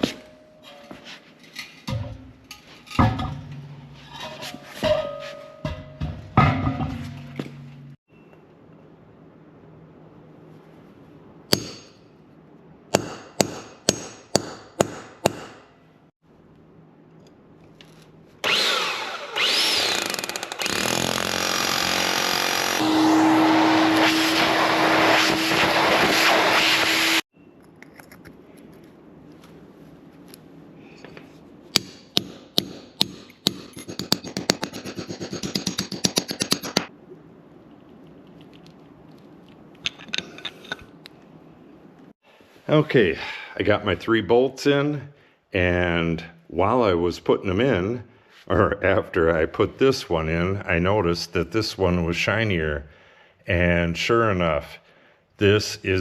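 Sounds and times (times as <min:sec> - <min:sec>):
rotary hammer drilling concrete: 0:18.4 - 0:27.2.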